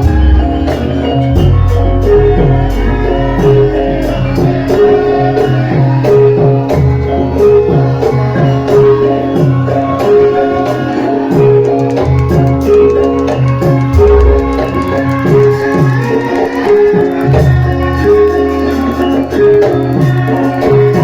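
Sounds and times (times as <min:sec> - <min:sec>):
metal keyed instruments melody: 0:00.0 - 0:21.0.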